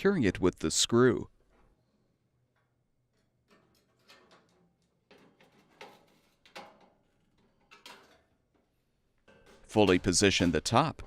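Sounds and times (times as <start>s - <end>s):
faint metal knocks and clicks: 2.5s - 10.0s.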